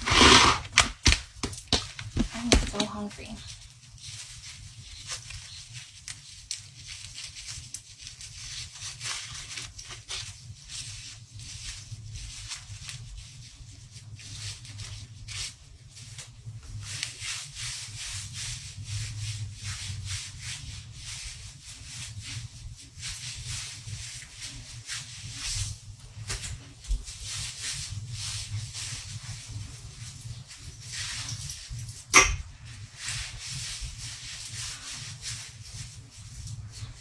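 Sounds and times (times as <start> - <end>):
rubbing against microphone: 0.0 - 1.2, 2.0 - 6.0, 32.6 - 37.0.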